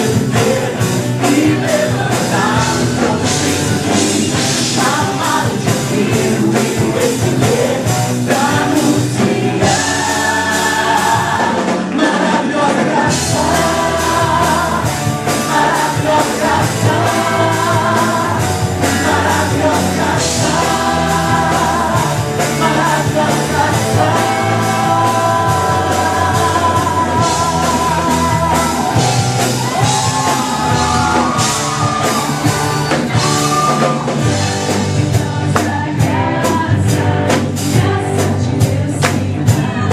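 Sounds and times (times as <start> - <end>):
person singing: 0.0 - 34.0
rock band playing: 0.0 - 39.9
steady drum beat: 0.0 - 39.9.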